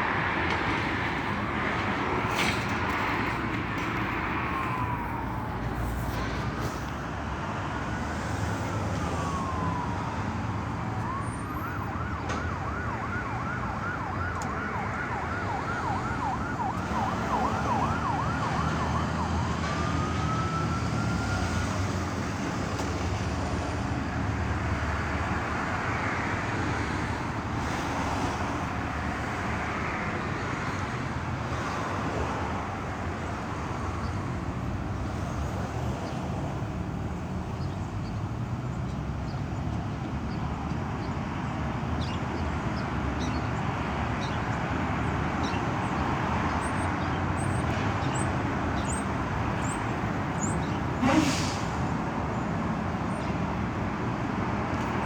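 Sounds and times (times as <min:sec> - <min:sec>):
emergency vehicle siren: 0:00.0 - 0:06.6, 0:07.7 - 0:28.1
traffic rumble: 0:00.0 - 0:55.0.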